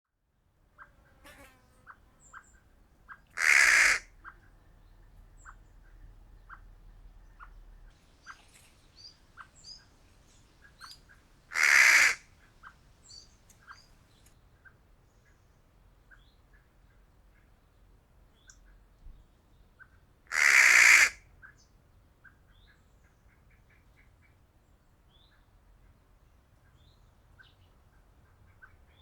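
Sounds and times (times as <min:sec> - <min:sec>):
small birds chirping: 0:01.8 - 0:14.4
crow cawing: 0:03.4 - 0:04.1, 0:11.5 - 0:12.3, 0:20.3 - 0:21.2.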